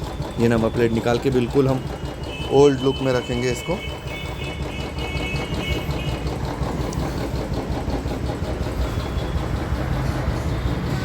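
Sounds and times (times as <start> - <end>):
motorcycle engine idling: 0.0 - 11.0.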